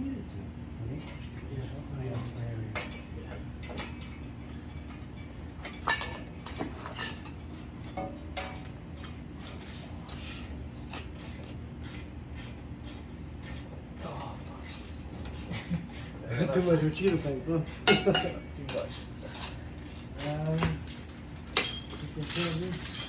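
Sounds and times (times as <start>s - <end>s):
steady low hum: 0.0s - 23.0s
metal tools clinking: 2.8s - 8.7s, 16.5s - 23.0s.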